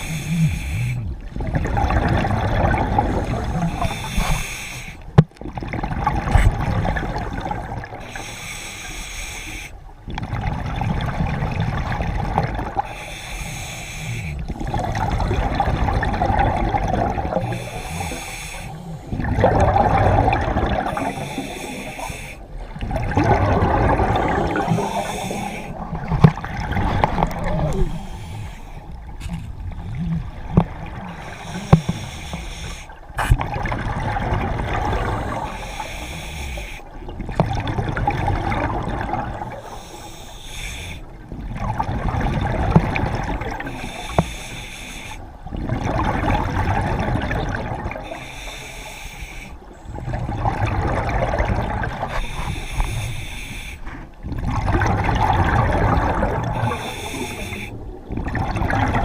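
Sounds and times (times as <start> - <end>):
diver breathing through regulator: 0.0 - 1.2, 3.0 - 5.0, 8.0 - 9.8, 12.8 - 15.6, 17.3 - 22.8, 23.5 - 26.0, 27.0 - 30.3, 31.0 - 33.4, 34.9 - 37.0, 39.4 - 41.2, 43.6 - 45.4, 47.9 - 50.4, 52.0 - 54.1, 56.0 - 58.0.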